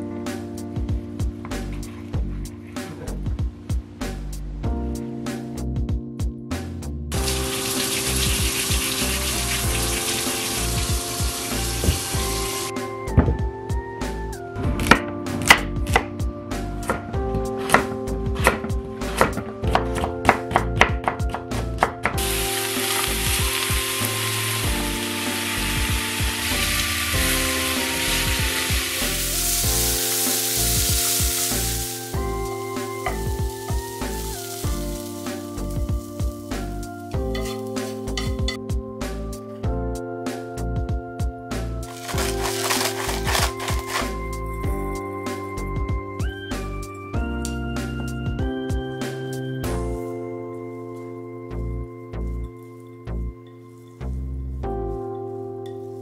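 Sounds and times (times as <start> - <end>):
background music: 0.0 - 56.0
food sizzling in hot oil: 7.1 - 12.7, 22.2 - 38.5, 41.8 - 44.4
tap water running into sink: 7.2 - 12.7.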